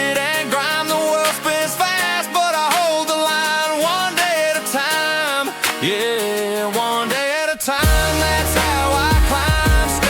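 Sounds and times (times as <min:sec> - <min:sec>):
gliding melody music: 0:07.8 - 0:10.0.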